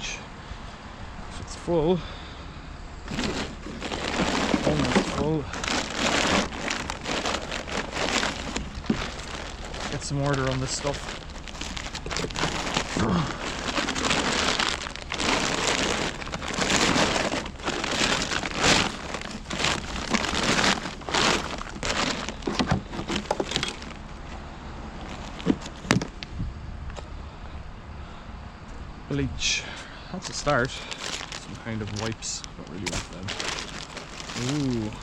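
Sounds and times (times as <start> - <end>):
plastic bags rustling: 3.0 - 24.3, 25.0 - 26.2, 30.2 - 35.0
items knocking together: 3.1 - 24.0, 25.0 - 26.2, 30.8 - 32.2, 32.8 - 35.0.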